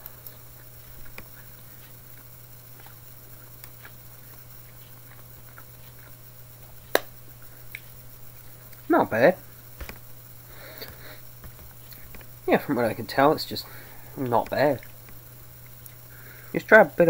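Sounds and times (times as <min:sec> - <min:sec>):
chewing: 0:00.0 - 0:06.8, 0:10.6 - 0:12.3, 0:13.7 - 0:16.1
steady low hum: 0:00.0 - 0:17.0.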